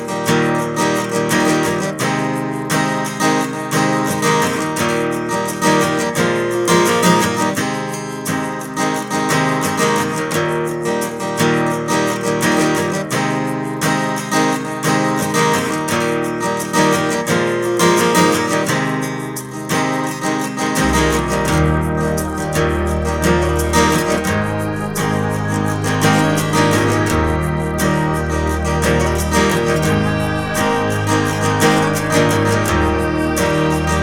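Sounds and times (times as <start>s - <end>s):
strummed acoustic guitar: 0.0s - 34.0s
low bass: 20.8s - 34.0s.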